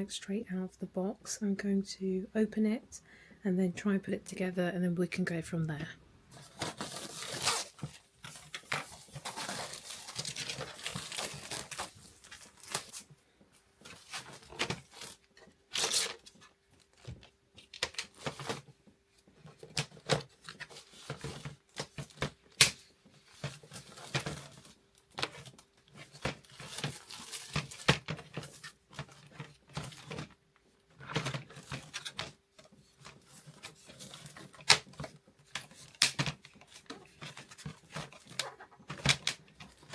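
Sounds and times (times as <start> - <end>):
rustling: 6.3 - 22.3
packaging tearing and crinkling: 6.4 - 13.1, 14.0 - 16.4.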